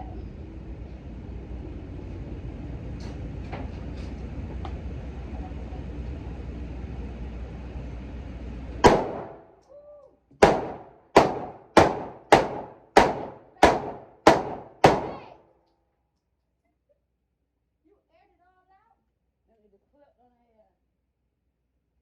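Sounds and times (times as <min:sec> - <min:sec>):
gunshots with echo: 0:08.8 - 0:09.4, 0:10.4 - 0:15.3.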